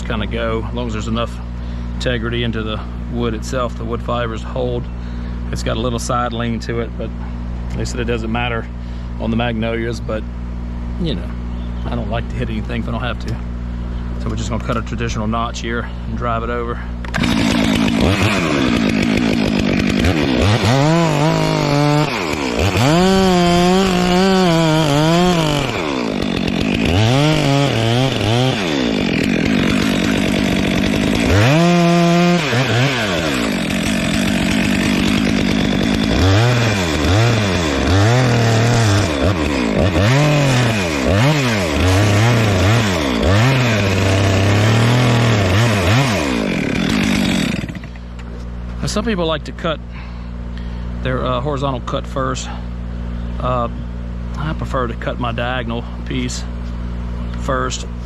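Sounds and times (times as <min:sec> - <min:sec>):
chainsaw cutting wood: 0:17.0 - 0:48.4.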